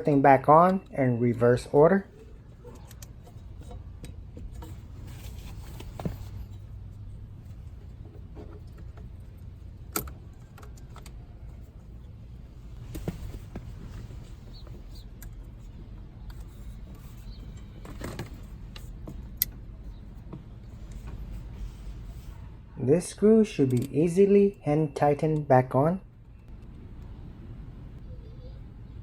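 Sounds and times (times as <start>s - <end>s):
steady low hum: 0.0s - 25.1s
small parts clicking and rattling: 2.1s - 12.2s.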